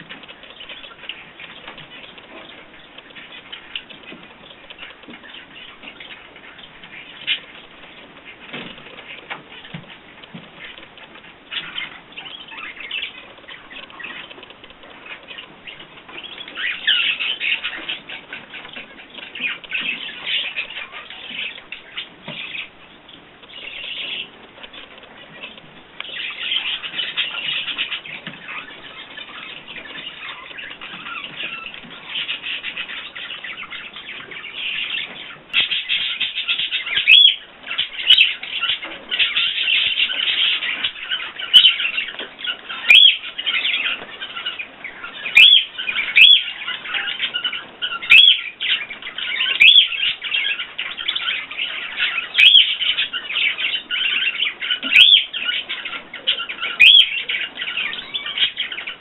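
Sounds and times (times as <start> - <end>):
small birds chirping and twittering: 0.0 - 59.0
loud sharp bird chirps: 26.1 - 59.0.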